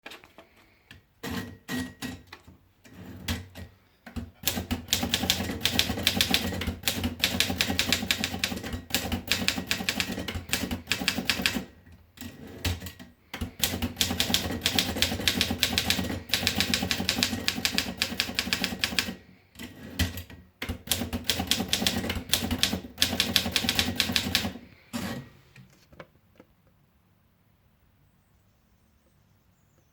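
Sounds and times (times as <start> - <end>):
manual typewriter keys clacking: 4.2 - 25.2.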